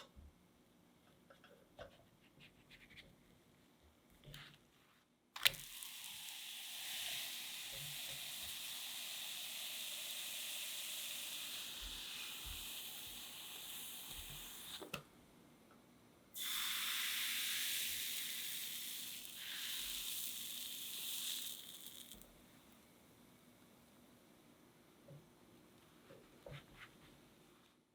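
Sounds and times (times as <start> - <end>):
batter sizzling in a pan: 5.4 - 14.9, 16.4 - 22.3.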